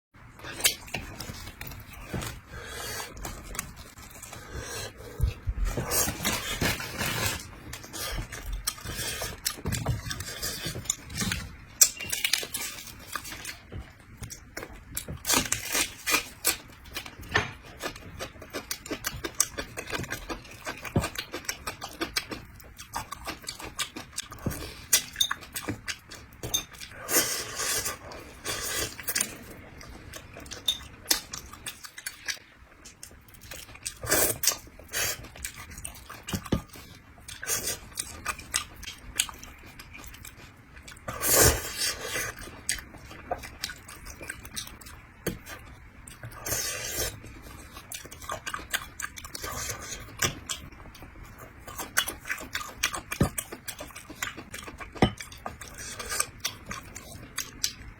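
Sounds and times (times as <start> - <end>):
person chewing and sucking wetly: 0.4 - 57.9.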